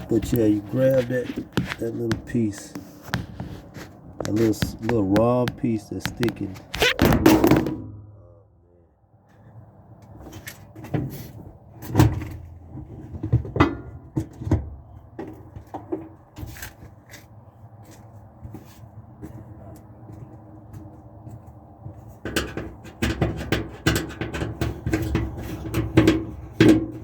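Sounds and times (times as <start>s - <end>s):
handling knocks and clunks: 0.0s - 8.0s, 10.2s - 16.9s, 22.2s - 27.0s
sharp taps: 4.2s - 7.0s.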